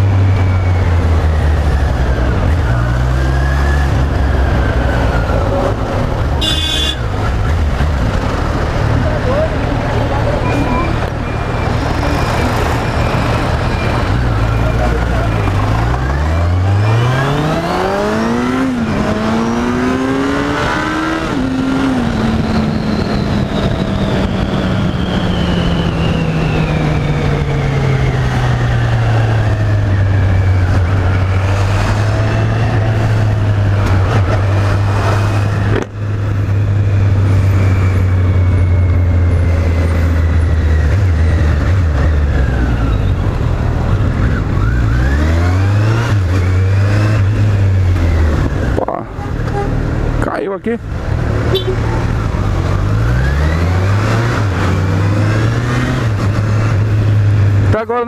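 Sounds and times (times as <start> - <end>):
motorcycle engine accelerating: 0.0 - 57.8.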